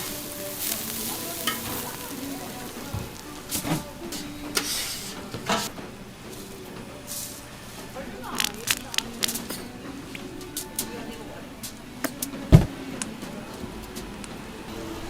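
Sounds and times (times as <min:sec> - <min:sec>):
food sizzling on a griddle: 0:00.0 - 0:05.7.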